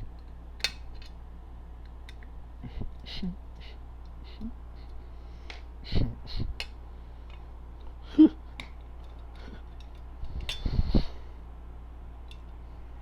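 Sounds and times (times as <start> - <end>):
small metal parts clicking: 8.6 - 10.7.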